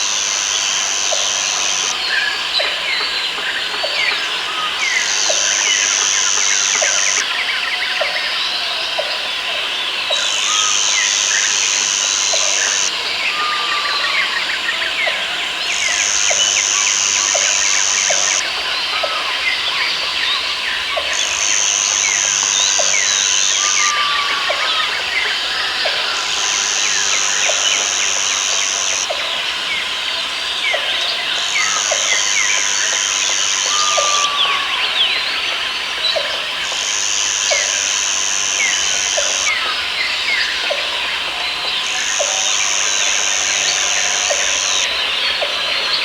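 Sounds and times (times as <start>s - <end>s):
insect high buzz: 0.0s - 2.6s, 4.0s - 7.2s, 10.2s - 14.5s, 15.2s - 18.5s, 21.1s - 40.8s, 41.8s - 45.6s.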